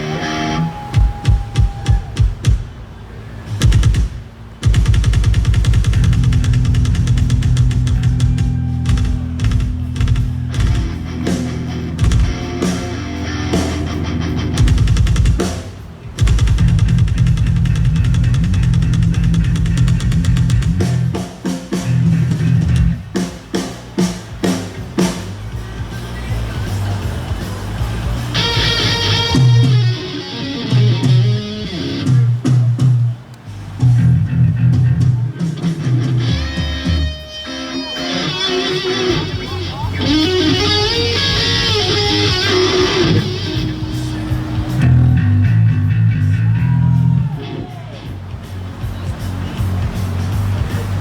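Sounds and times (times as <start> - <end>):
electric guitar lead with bent notes: 0.0 - 2.5, 4.7 - 15.5, 16.2 - 21.2, 28.3 - 48.4
accented band hits: 0.0 - 51.0
rock band playing: 0.0 - 51.0
bass guitar: 3.6 - 51.0.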